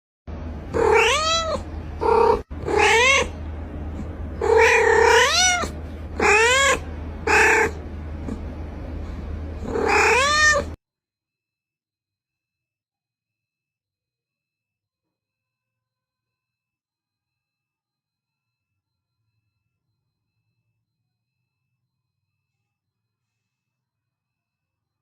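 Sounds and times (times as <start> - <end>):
low hum: 0.3 - 10.8
cat meowing: 0.7 - 3.4, 4.4 - 8.4, 9.6 - 10.8.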